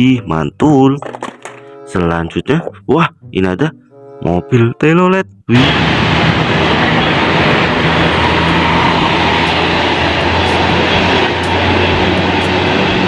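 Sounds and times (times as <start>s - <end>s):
bus engine running: 5.6s - 13.0s.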